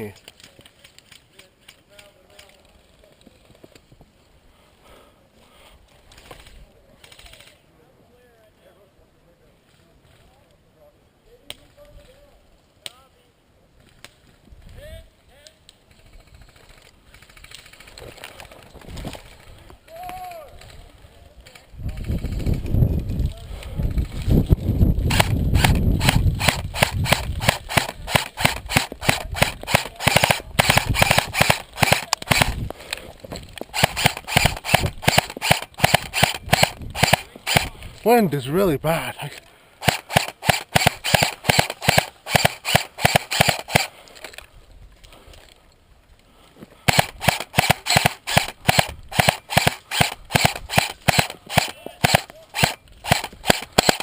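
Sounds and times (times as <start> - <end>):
wind rumble on microphone: 21.7 - 29.7
airsoft guns firing: 25.1 - 32.7, 33.7 - 37.7, 39.8 - 44.0, 46.8 - 54.0.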